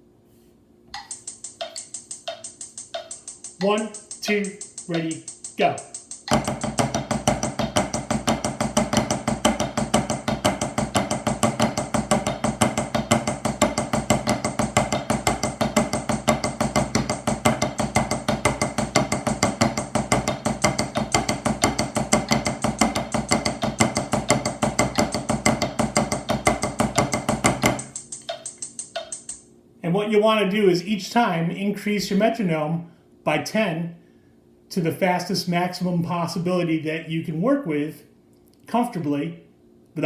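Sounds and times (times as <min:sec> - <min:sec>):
drumsticks playing rapid strokes: 0:00.9 - 0:29.4.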